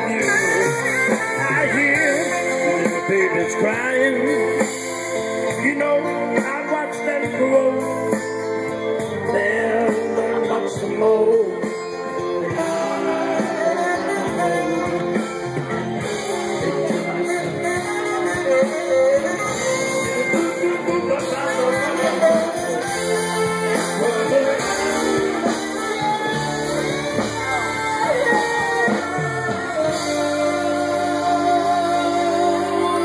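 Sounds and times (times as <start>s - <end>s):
guitar: 0.0s - 33.0s
live band playing: 0.0s - 33.0s
person singing: 0.0s - 33.0s.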